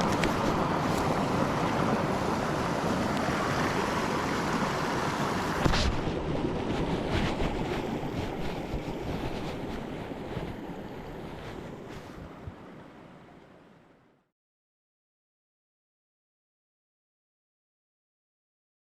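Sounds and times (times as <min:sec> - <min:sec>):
wind buffeting microphone: 0:00.0 - 0:12.6
river water rushing: 0:00.0 - 0:14.1.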